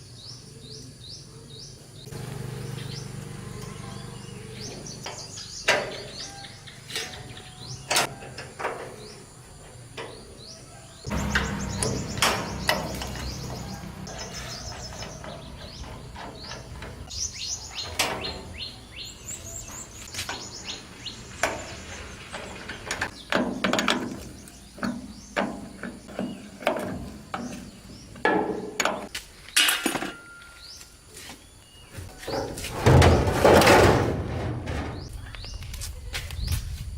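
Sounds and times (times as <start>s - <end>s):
small birds chirping: 0.0s - 8.2s, 8.9s - 29.6s, 34.9s - 36.9s.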